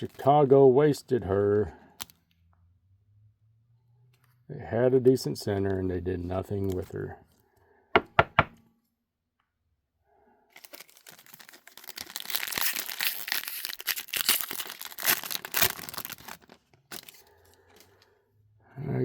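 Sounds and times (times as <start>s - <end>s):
sharp knocks: 8.0s - 8.6s
foil wrapper tearing and crinkling: 10.5s - 17.6s.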